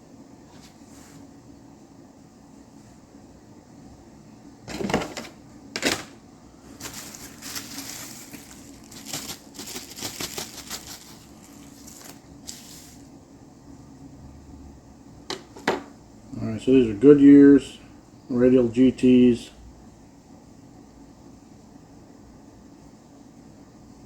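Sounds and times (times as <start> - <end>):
plastic bag crinkling: 6.7 - 13.0.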